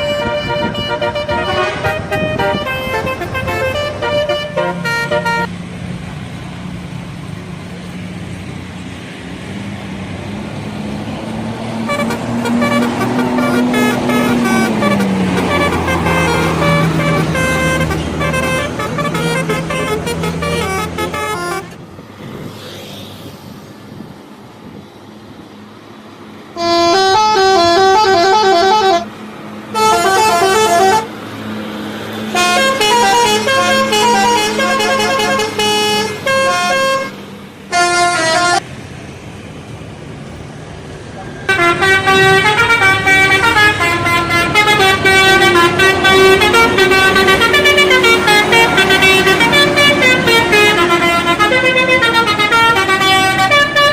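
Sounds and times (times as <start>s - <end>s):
musical bus horn: 0.0s - 5.5s, 11.8s - 21.8s, 26.6s - 31.3s, 32.1s - 38.6s, 41.5s - 53.9s
bus engine hum: 0.0s - 53.9s.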